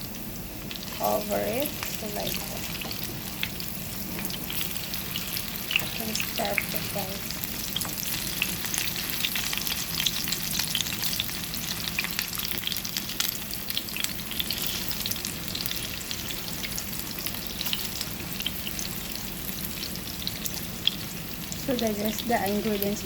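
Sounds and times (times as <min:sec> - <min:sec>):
patties sizzling in oil: 0:00.0 - 0:23.0.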